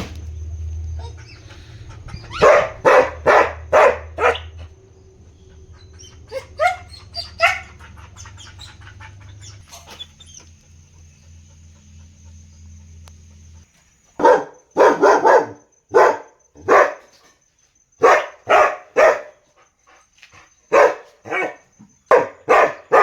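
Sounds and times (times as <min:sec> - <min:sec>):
steady low hum: 0:00.0 - 0:14.8
dog barking: 0:01.0 - 0:04.8, 0:05.4 - 0:10.2, 0:14.2 - 0:17.2, 0:18.0 - 0:19.4, 0:20.7 - 0:23.0.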